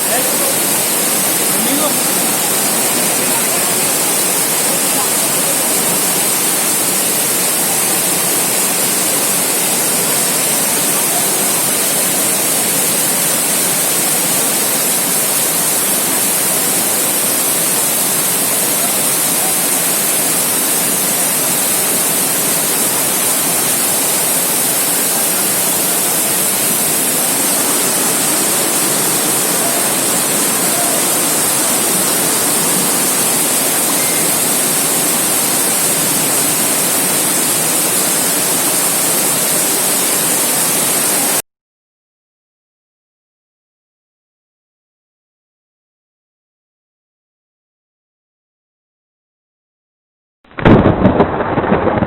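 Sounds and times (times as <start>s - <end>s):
heavy rain falling: 0.0s - 41.4s, 50.6s - 52.0s.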